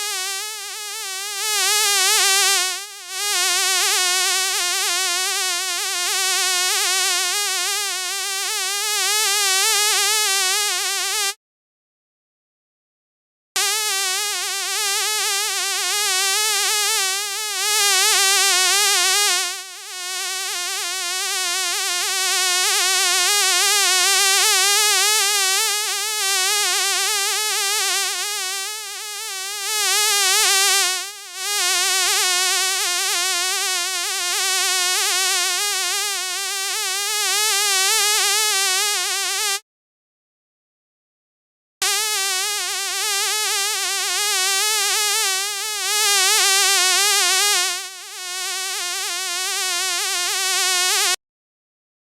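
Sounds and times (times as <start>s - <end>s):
fly buzzing: 0.0s - 11.4s, 13.6s - 39.6s, 41.8s - 51.2s.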